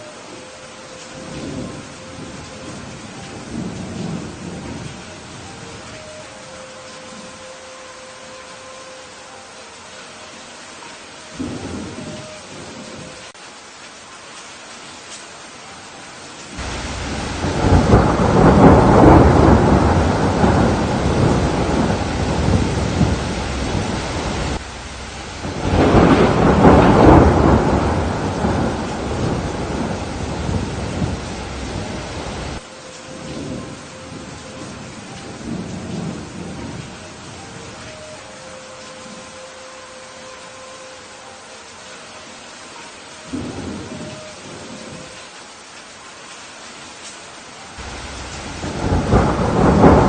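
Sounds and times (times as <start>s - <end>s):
steady rain: 0.0s - 50.0s
thunder rumbling: 1.1s - 6.4s, 11.4s - 13.3s, 16.5s - 38.1s, 47.8s - 50.0s.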